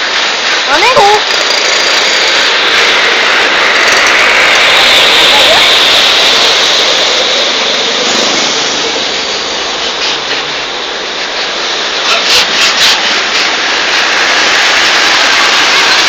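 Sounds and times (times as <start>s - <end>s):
traffic rushing past: 0.0s - 16.0s.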